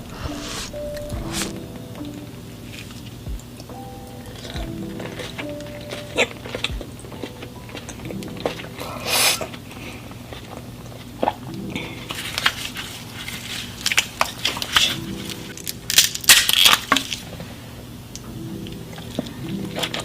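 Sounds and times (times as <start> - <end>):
crunching and chewing food: 4.3 - 17.4.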